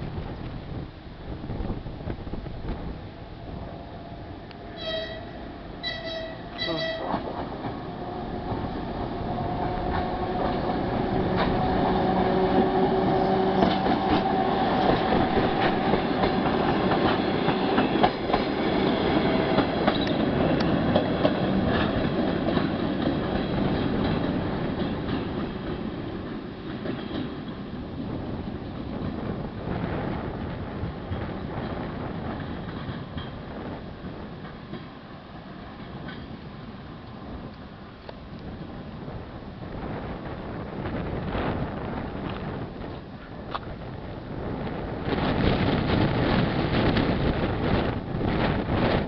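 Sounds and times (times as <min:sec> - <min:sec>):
diesel locomotive engine: 0:00.0 - 0:49.0
train wheels clicking on rail joints: 0:04.1 - 0:38.6, 0:40.2 - 0:49.0
locomotive horn blasts: 0:04.8 - 0:07.3.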